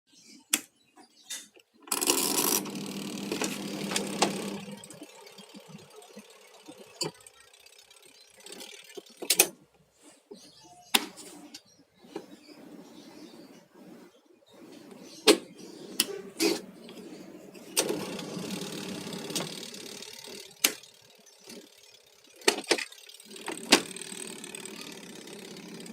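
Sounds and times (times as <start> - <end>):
washing machine motor hum rattling: 1.9 - 9.4, 16.9 - 25.9.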